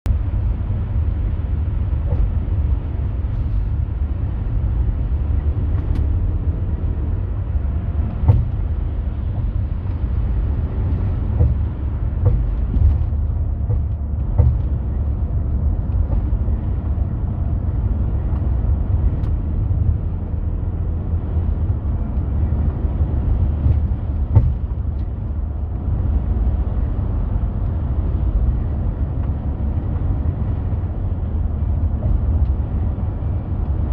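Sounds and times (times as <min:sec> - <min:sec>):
van engine rumble: 0:00.0 - 0:33.9
sharp drivetrain knock: 0:08.0 - 0:16.9, 0:23.3 - 0:25.2.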